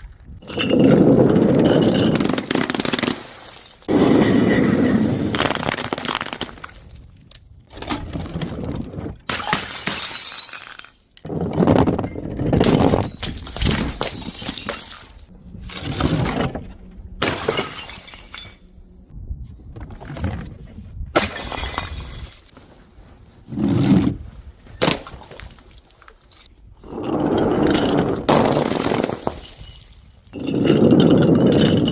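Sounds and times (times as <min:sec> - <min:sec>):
glass bottles shattering: 0:00.4 - 0:06.6, 0:09.3 - 0:11.2, 0:12.6 - 0:15.3, 0:17.2 - 0:18.8, 0:21.2 - 0:22.4, 0:28.3 - 0:31.9.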